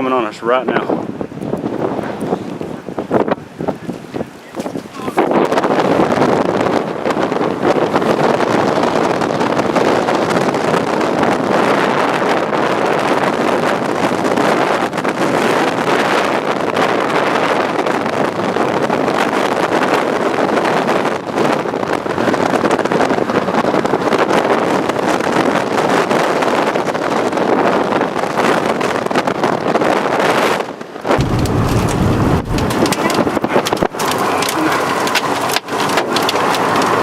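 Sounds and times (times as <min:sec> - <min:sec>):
wind buffeting microphone: 0:00.0 - 0:37.0
sharp clicks: 0:31.2 - 0:36.9.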